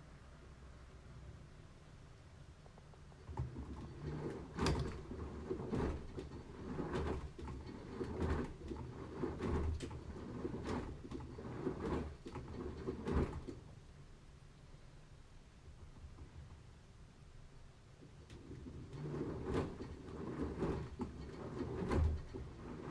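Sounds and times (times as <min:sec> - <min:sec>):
washing machine load sloshing: 0:03.2 - 0:13.7, 0:17.8 - 0:22.9.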